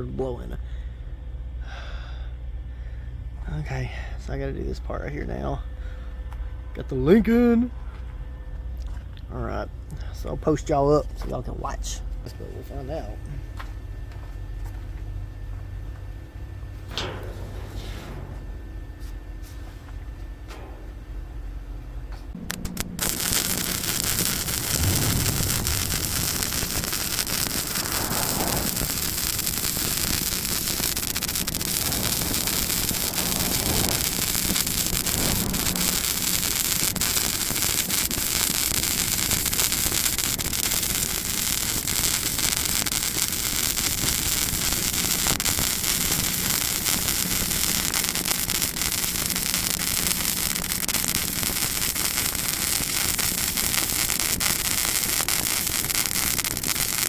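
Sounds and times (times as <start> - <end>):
faint low hum: 0.0 - 38.0
welding arc crackling sizzle: 10.5 - 57.0.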